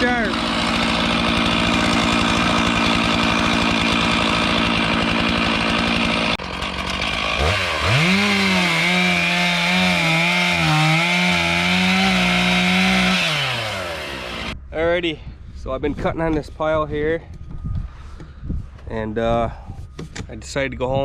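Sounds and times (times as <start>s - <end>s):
chainsaw cutting wood: 0.0s - 14.6s.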